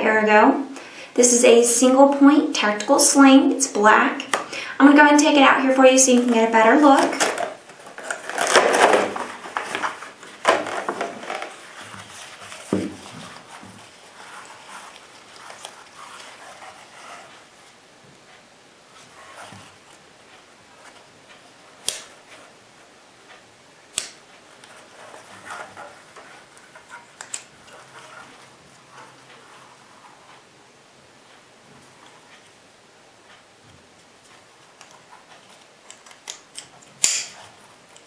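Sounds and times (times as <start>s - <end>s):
packaging rustling: 6.2s - 17.4s.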